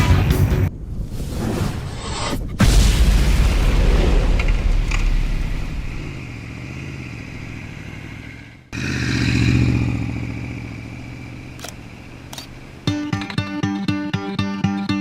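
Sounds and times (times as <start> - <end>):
motorcycle engine: 5.6 - 13.7.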